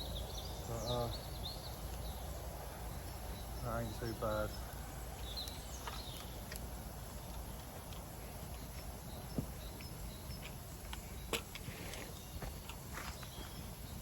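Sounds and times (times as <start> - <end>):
low outdoor background noise: 0.0 - 14.0.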